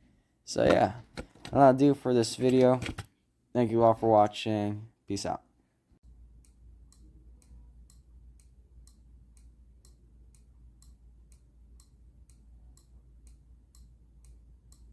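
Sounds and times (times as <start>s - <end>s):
faint regular ticking: 6.4s - 14.9s.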